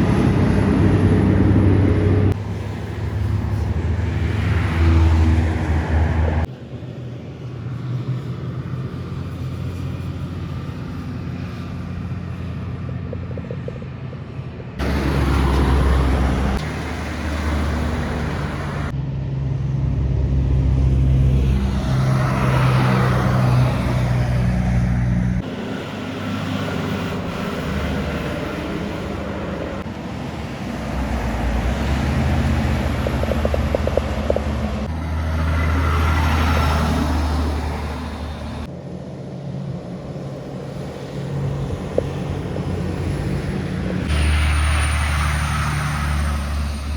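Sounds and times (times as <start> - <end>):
diesel truck engines droning: 0.0 - 46.9
tyre noise of passing trucks: 0.0 - 46.9.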